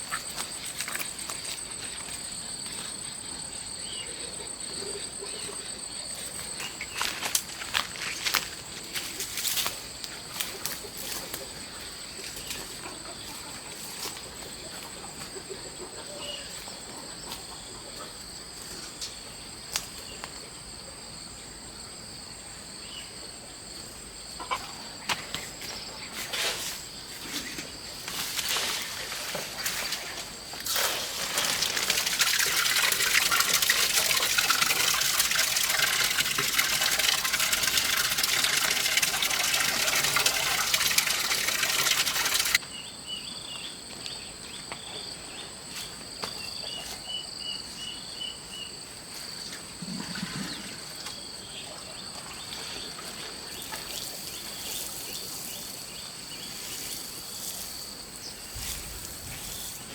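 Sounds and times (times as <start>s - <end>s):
insects trilling: 0.0s - 59.9s
running water rushing: 28.6s - 42.6s.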